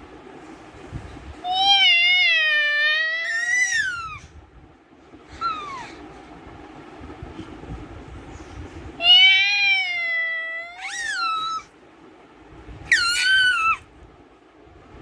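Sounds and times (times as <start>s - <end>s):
meow-like animal calls: 1.5s - 4.2s, 9.0s - 11.7s, 12.9s - 13.8s.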